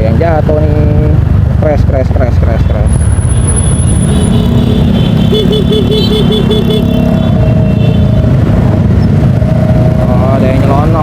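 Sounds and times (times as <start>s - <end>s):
wind and road noise: 0.0s - 11.0s
motorcycle engine running: 3.0s - 11.0s.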